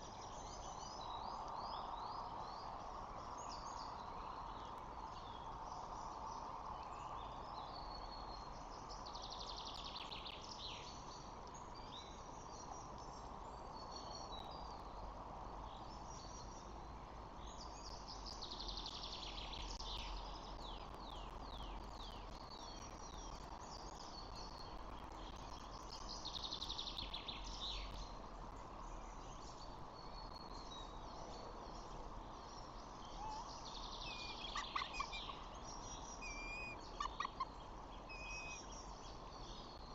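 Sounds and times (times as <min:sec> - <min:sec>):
microphone hiss: 0:00.0 - 0:39.9
songbird trilling: 0:33.1 - 0:39.0.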